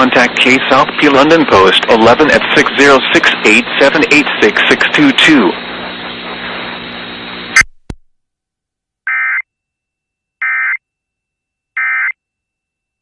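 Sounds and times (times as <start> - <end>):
radio hiss with low hum: 0.0 - 7.7
screechy digital data tones: 9.1 - 9.4.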